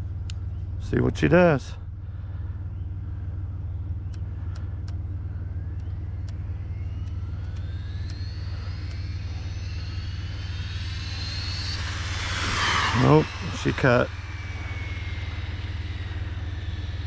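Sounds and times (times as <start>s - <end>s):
low rumble: 0.0s - 17.0s
electric motor whine rising: 3.6s - 17.0s
sharp ticks: 4.1s - 5.0s, 5.7s - 13.7s.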